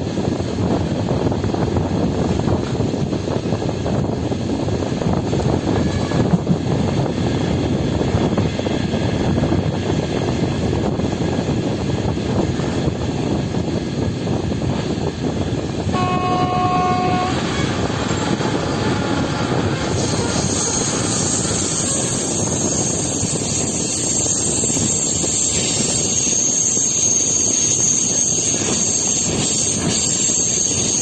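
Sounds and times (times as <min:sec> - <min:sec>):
train rumbling along track: 0:00.0 - 0:31.0
train horn blast: 0:05.7 - 0:06.4, 0:15.9 - 0:21.4.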